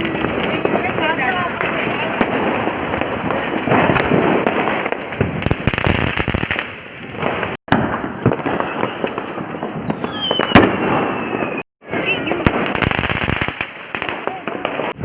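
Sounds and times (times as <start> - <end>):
firecrackers crackling and banging: 0.0 - 15.0
falling firework whistle: 8.3 - 12.1.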